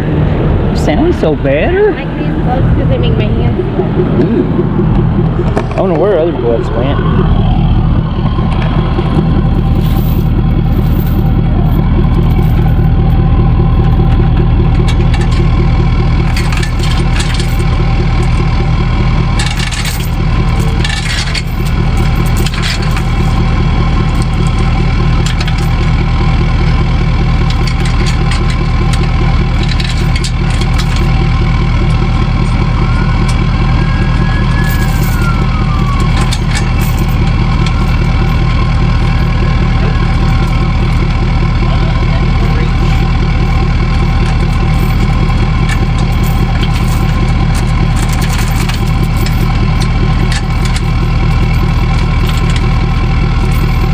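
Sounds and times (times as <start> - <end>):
diesel engine rumbling: 0.0 - 53.9
faint rising and falling tone: 1.9 - 14.7, 31.7 - 42.8.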